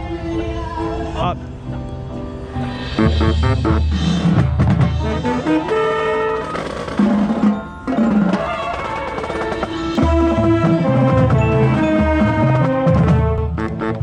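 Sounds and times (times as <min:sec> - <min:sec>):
marching band playing: 0:02.7 - 0:14.0
low brass: 0:02.9 - 0:07.1, 0:10.0 - 0:14.0.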